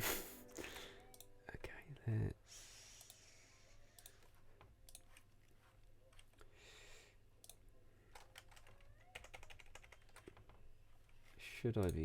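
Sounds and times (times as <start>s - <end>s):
keyboard typing clicks: 7.4s - 10.6s.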